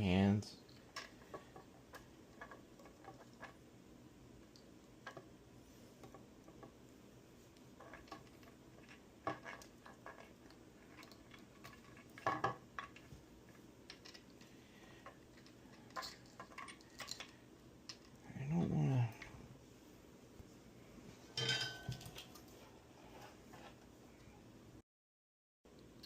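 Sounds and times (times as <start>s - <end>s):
low voice: 18.2s - 19.4s.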